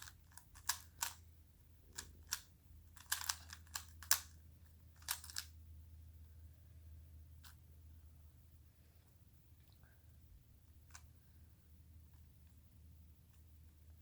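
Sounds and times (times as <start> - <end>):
puzzle cube layers clicking: 3.0 - 4.4, 5.0 - 5.5.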